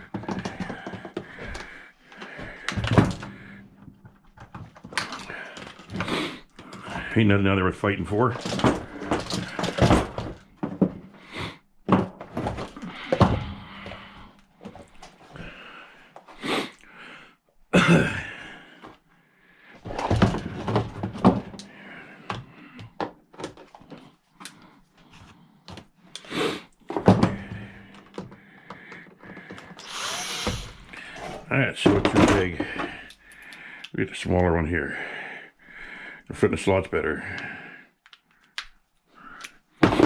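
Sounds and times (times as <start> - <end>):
plastic casing knocking and clattering: 0.0 - 6.1, 8.3 - 11.1, 11.9 - 14.1, 19.9 - 21.7, 26.9 - 29.8, 31.0 - 33.1, 39.8 - 40.0.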